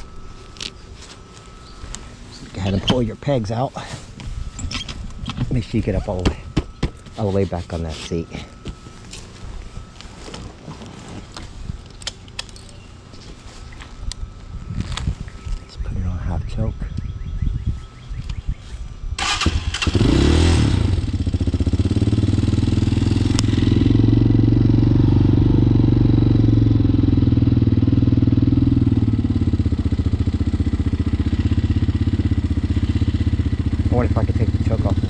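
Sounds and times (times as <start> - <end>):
motorcycle engine starting and idling: 19.2 - 35.0.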